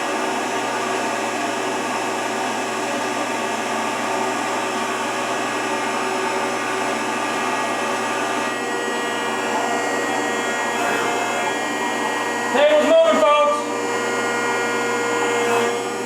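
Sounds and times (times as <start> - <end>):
planer machine hum and hiss: 0.0 - 16.0
steady machine tones: 3.6 - 16.0.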